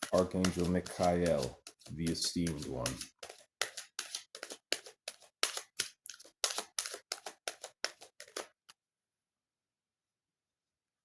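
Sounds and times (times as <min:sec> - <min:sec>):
cards being shuffled: 0:00.0 - 0:08.8.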